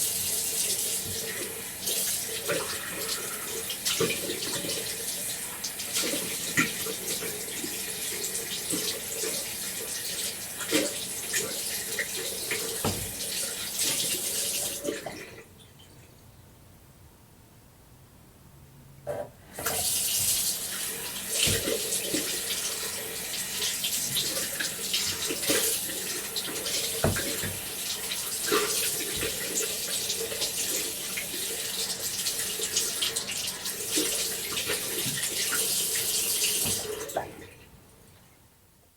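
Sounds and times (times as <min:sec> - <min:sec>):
tap water running into sink: 0:00.0 - 0:15.1, 0:19.6 - 0:37.3
hands washing with splashes: 0:19.6 - 0:37.2.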